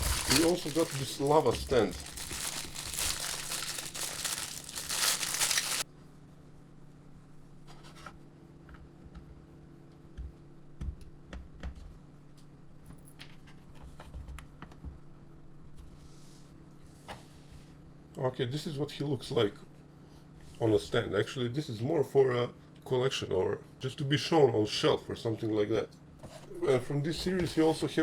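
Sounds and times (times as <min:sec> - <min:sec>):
plastic packaging crinkling and tearing: 0:00.0 - 0:05.8.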